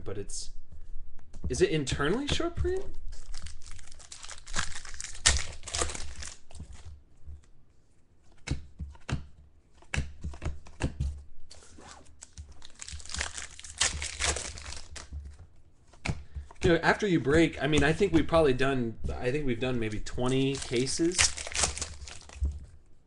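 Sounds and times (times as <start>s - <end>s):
cards clicking and rustling: 2.1s - 7.5s, 8.3s - 11.2s, 12.0s - 18.5s, 19.7s - 22.7s
wrapper crinkling and tearing: 2.9s - 6.8s, 12.0s - 15.1s, 20.3s - 22.5s.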